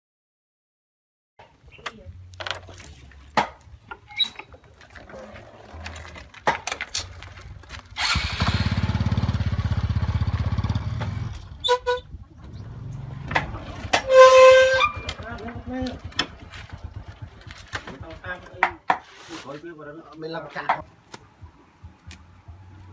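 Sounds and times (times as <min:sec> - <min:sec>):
small engine running: 0:07.9 - 0:11.6, 0:12.4 - 0:18.5
scattered clicks and knocks: 0:14.9 - 0:19.1.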